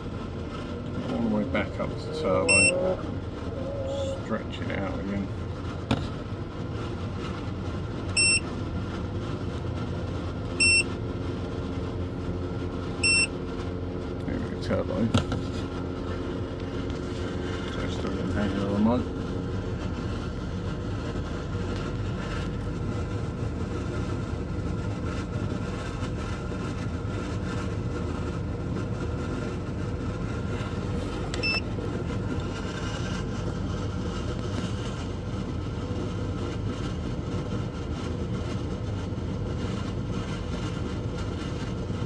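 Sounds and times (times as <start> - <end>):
compressor hum: 0.0 - 42.0
fan air rushing: 0.0 - 42.0
short beep: 2.4 - 2.8, 8.2 - 8.4, 10.6 - 10.9, 13.0 - 13.3.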